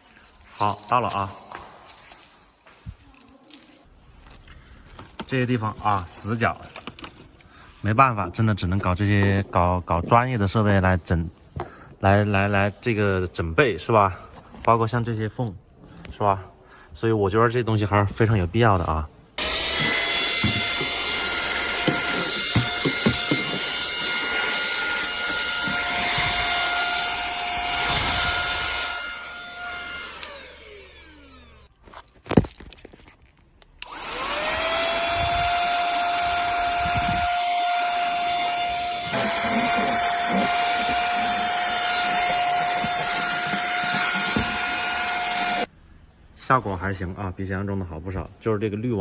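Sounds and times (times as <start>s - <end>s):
handheld vacuum cleaner whine: 19.4s - 31.7s, 33.8s - 45.7s.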